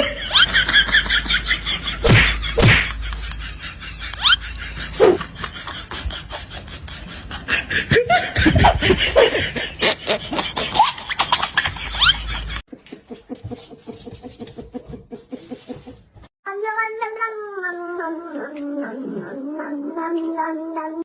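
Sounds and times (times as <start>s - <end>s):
people laughing: 0.0s - 16.0s
cat meowing: 16.5s - 21.0s.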